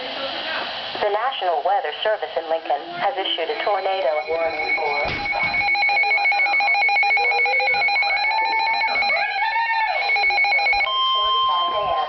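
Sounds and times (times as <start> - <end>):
shrill electronic alarm beeping: 3.3 - 12.0.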